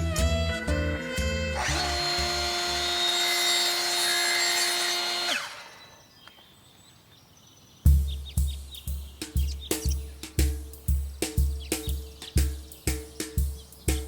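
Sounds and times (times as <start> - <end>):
power tool motor whining: 1.5 - 6.4.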